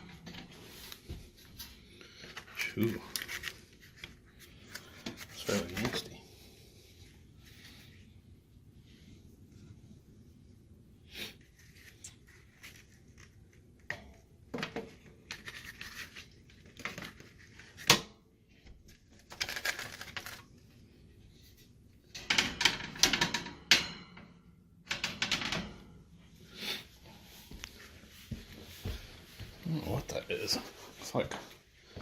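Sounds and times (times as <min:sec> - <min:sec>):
air filter clicks and knocks: 0:22.1 - 0:24.2.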